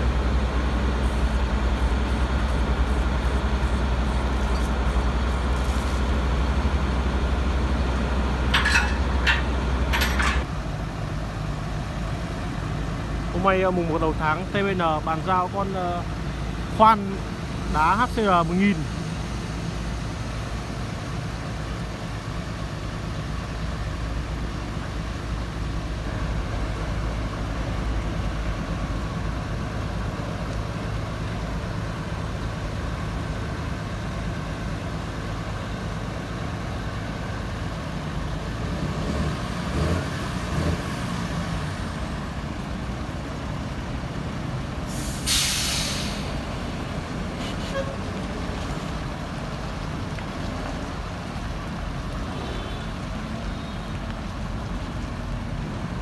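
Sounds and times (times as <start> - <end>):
diesel engine idling: 0.0 - 38.6, 41.5 - 52.2
hiss of released air: 44.9 - 46.4.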